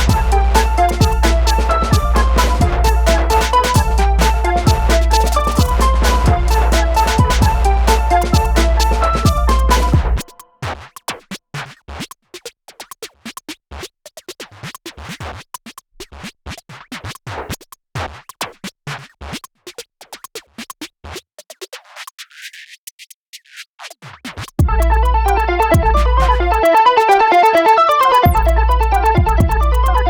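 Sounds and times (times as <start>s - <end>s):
electronic music beat with bass: 0.0s - 10.5s, 24.6s - 30.0s.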